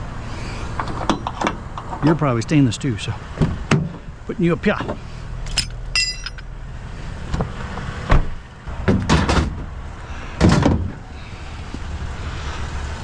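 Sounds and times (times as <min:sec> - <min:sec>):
metal pieces knocking and thudding: 0:05.5 - 0:06.4
metallic clink ringing: 0:05.5 - 0:06.5.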